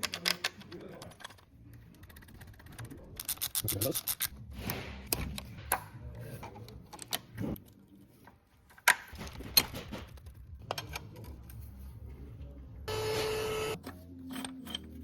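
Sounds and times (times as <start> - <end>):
tools and metal parts clicking: 0.0 - 4.4, 13.8 - 15.0.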